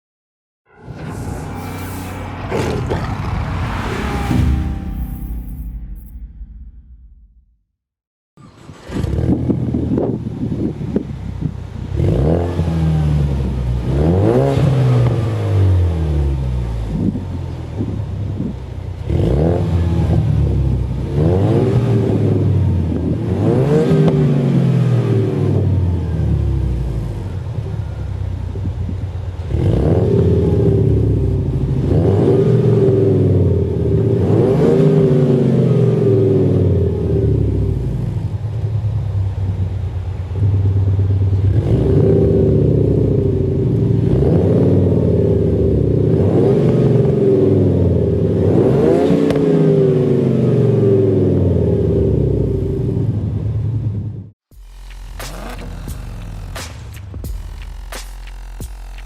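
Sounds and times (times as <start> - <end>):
synthetic engine sound from speaker: 54.5 - 59.0.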